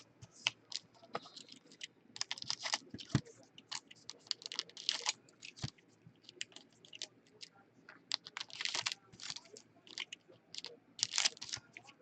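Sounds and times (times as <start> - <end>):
cards rustling: 0.0 - 12.0.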